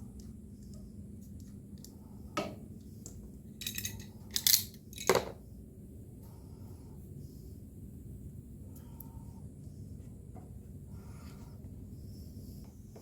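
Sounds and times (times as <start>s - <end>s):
metal parts clicking and clinking: 3.6s - 5.3s.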